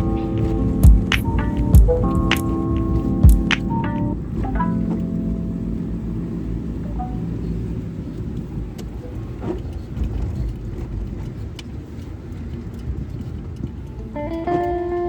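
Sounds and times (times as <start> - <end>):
bell-like musical notes: 0.0 - 9.5
low rumble like road traffic: 0.0 - 15.0.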